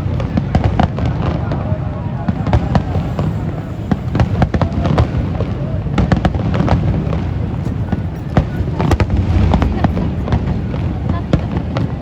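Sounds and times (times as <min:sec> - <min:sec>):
fireworks bangs and crackles: 0:00.0 - 0:12.0
low rumble: 0:08.7 - 0:12.0.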